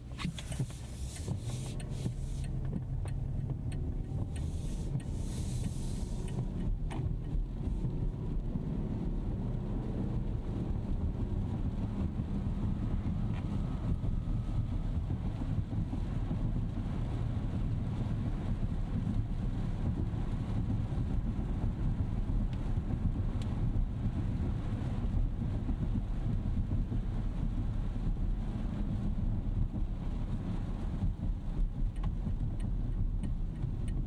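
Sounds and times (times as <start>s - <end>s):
road and tyre rumble: 0.0s - 34.0s
faint ticks: 0.3s - 7.4s, 31.6s - 34.0s.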